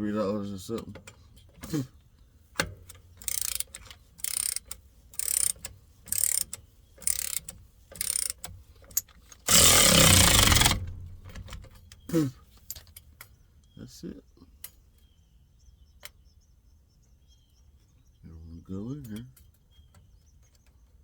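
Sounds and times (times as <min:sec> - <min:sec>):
socket ratchet clicking: 0:03.2 - 0:08.5, 0:09.5 - 0:11.7
loud burst of noise: 0:09.5 - 0:11.6.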